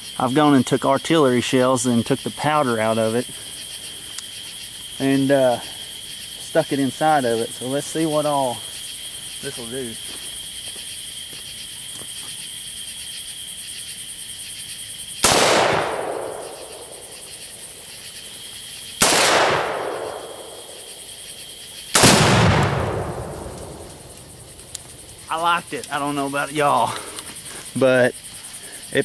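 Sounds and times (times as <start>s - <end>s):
crickets chirping: 0.0s - 29.0s
rifle shots: 15.2s - 17.3s, 19.0s - 20.8s, 21.9s - 24.6s
explosive blasts with rolling echo: 15.2s - 17.8s, 19.0s - 21.3s, 21.9s - 26.1s.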